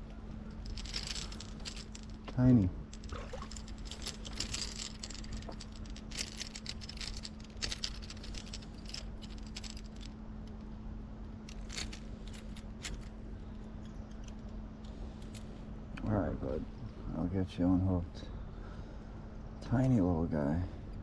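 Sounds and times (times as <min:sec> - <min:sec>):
small metallic clicks and rattles: 0:00.0 - 0:10.8, 0:11.4 - 0:16.1
steady low hum: 0:00.0 - 0:21.0.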